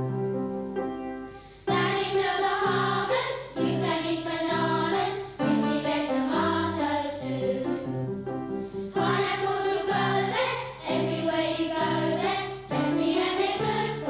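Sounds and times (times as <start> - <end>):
voices singing jaunty song: 1.7 - 7.9, 8.9 - 14.0.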